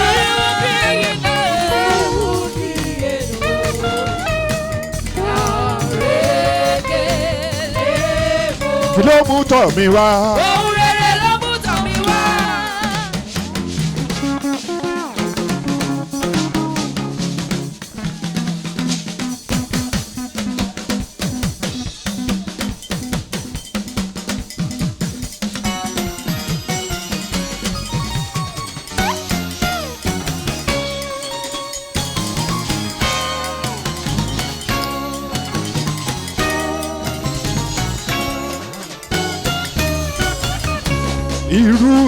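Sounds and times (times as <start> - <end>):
held bass note: 0.0 - 14.4, 32.4 - 42.0
voices singing gospel: 0.0 - 18.6, 32.2 - 42.0
drum kit snare and rimshot hits: 0.0 - 31.1, 32.0 - 42.0
instrumental accompaniment: 0.0 - 42.0.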